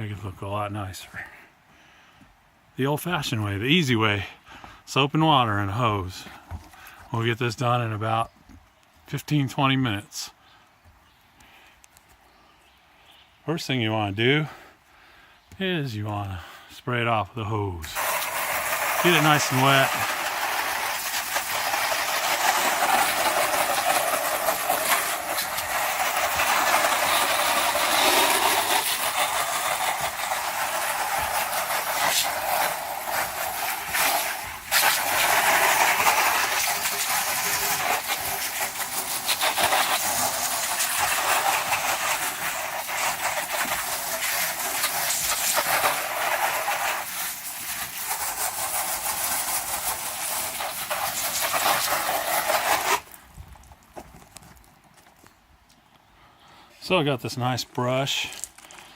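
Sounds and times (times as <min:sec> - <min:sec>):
garden hose spraying siding: 0:02.4 - 0:12.2, 0:13.4 - 0:54.7, 0:56.5 - 0:58.9.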